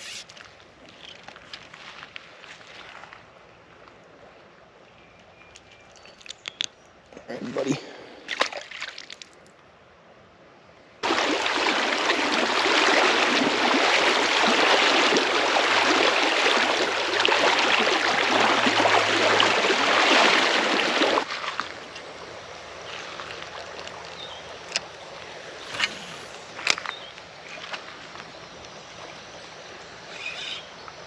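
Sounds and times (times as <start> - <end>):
water trickling: 11.0 - 26.8
creek water rushing over rocks: 11.0 - 28.2.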